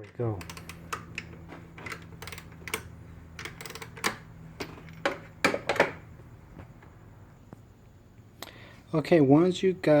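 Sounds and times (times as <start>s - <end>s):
ratchet clicking: 0.4s - 4.3s.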